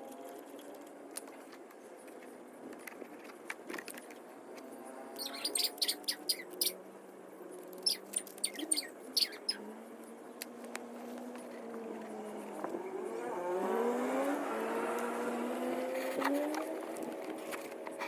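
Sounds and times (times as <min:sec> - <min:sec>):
small birds chirping: 0:05.0 - 0:06.8, 0:07.6 - 0:10.7.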